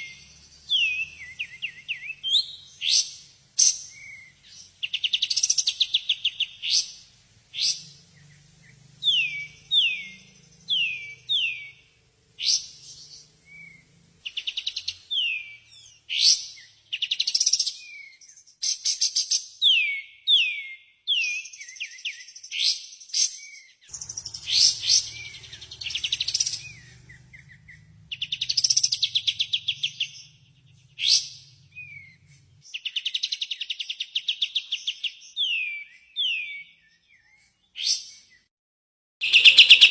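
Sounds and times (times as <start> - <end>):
bird whistling downward-sliding notes: 0.0 - 18.2, 23.4 - 38.4
bird rattling trills and chattering: 23.9 - 32.1.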